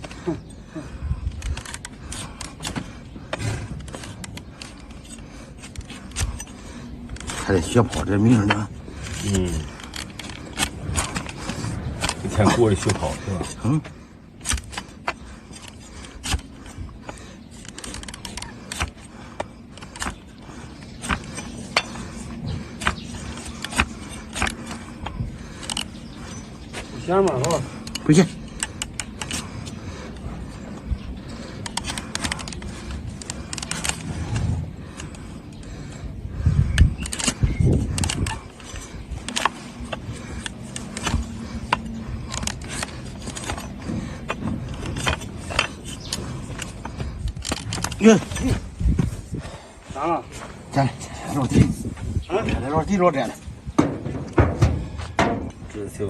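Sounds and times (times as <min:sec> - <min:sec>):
steel tools clicking on hoof: 0:14.4 - 0:29.8, 0:36.8 - 0:48.6.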